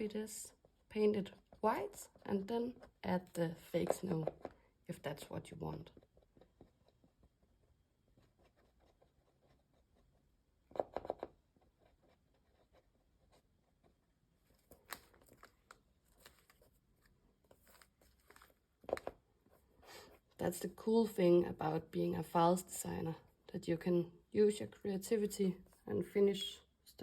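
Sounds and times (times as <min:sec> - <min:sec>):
rustles and scrapes of handling: 0:13.8 - 0:20.4.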